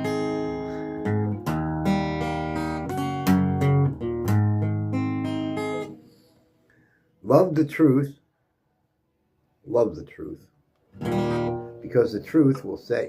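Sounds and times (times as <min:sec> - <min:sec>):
acoustic guitar strumming chords: 0:00.0 - 0:06.3, 0:10.9 - 0:12.8.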